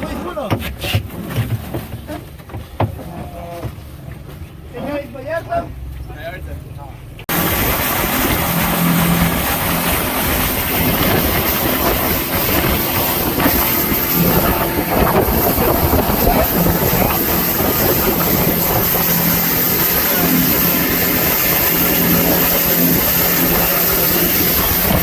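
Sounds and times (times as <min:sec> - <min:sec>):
boat motor running: 0:07.2 - 0:25.0
wind and water rushing: 0:07.3 - 0:25.0.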